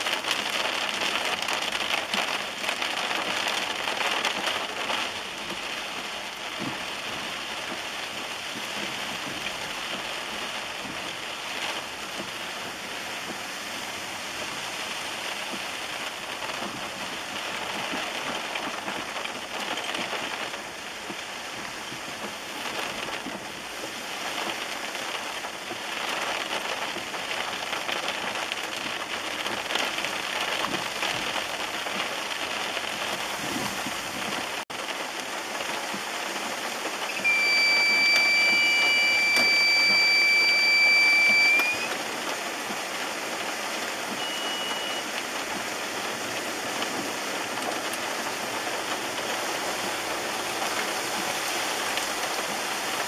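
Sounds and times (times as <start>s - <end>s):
rain-like water noise: 0.0s - 53.0s
high-pitched tone: 37.1s - 41.9s.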